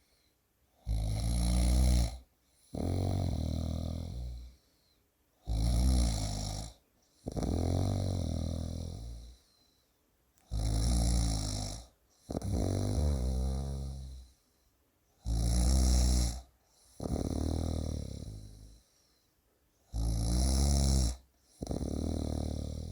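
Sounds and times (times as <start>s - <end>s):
person snoring heavily: 0.8s - 4.6s, 5.4s - 9.4s, 10.5s - 14.3s, 15.2s - 18.8s, 19.9s - 22.9s.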